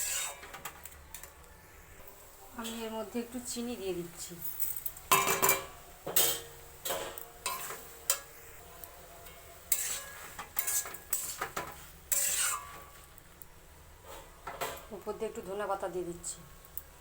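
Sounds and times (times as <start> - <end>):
metal spoon scraping a pan: 0.0 - 1.3, 4.4 - 13.2.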